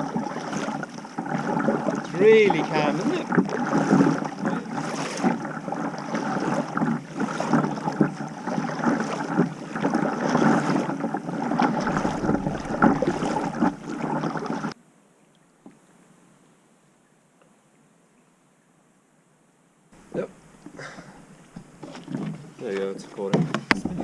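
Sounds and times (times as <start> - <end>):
water splashing around a kayak: 0.0 - 14.8, 20.0 - 24.0.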